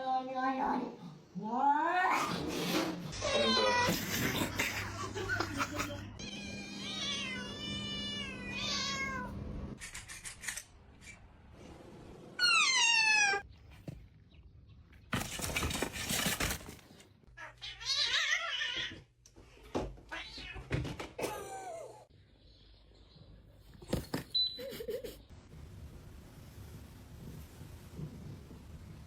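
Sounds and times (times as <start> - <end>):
cats meowing: 6.2 - 9.4, 12.4 - 13.4, 17.3 - 19.0, 20.1 - 20.8.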